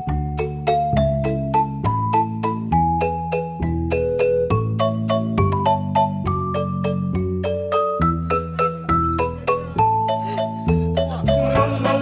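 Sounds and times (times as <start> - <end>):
plucky mallet melody: 0.0 - 12.0
sustained bass chord: 11.3 - 12.0.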